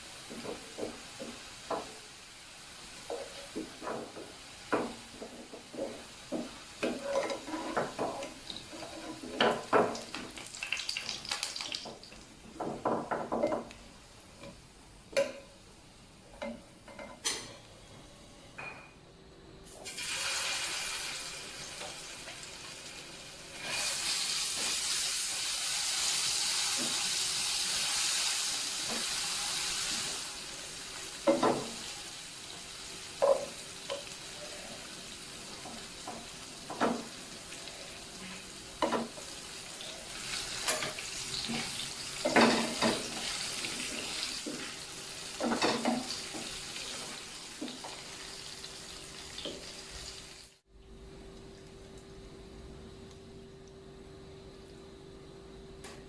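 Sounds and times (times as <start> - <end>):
soup hissing in a pot: 19.7 - 21.8, 23.5 - 30.9.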